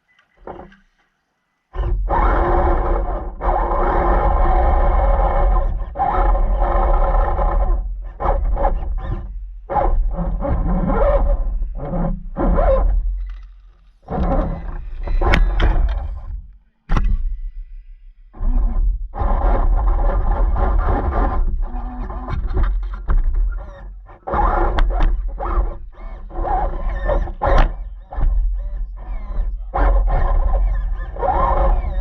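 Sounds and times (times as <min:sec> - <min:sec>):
radio-controlled car motor revving: 0:01.7 - 0:13.4, 0:23.6 - 0:32.0.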